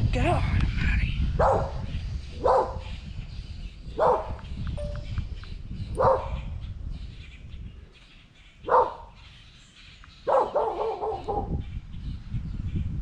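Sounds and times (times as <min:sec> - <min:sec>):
dog barking: 0:01.4 - 0:02.9, 0:04.0 - 0:04.4, 0:06.0 - 0:06.5, 0:08.6 - 0:09.2, 0:10.2 - 0:11.6.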